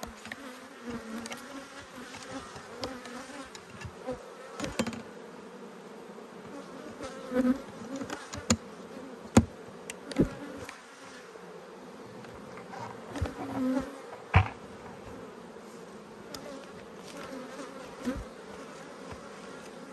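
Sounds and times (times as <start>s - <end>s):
bees buzzing: 0.0s - 19.9s
sharp knocks and clicks: 12.2s - 15.0s.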